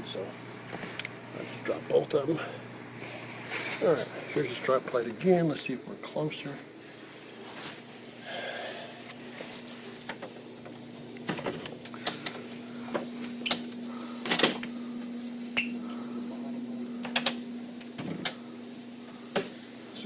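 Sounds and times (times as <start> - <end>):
steady low hum: 0.0 - 20.0.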